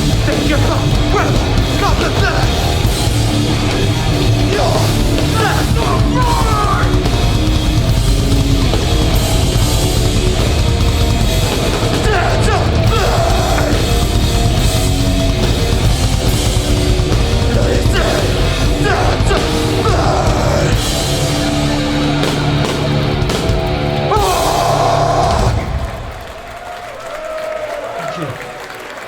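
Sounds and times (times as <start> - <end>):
shouted vocals: 0.0 - 7.4, 11.6 - 14.6, 17.2 - 22.6, 23.9 - 28.8
bass guitar: 0.0 - 26.2
distorted guitars: 0.0 - 26.2
drums: 0.0 - 29.0.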